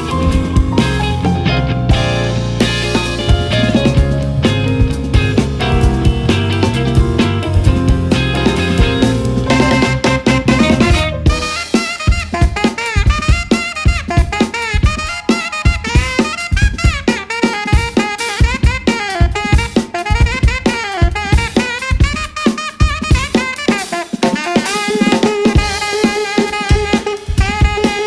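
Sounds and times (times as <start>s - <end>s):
sliding melodic lead line: 0.0s - 18.0s
drum kit groove: 0.0s - 28.0s
live funk band playing: 0.0s - 28.0s.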